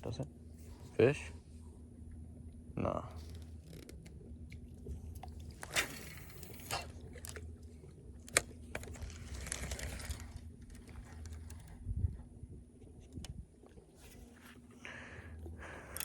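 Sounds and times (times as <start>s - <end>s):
faint steady low hum: 0.0s - 16.0s
clicks and crunching handling noises: 3.2s - 11.8s.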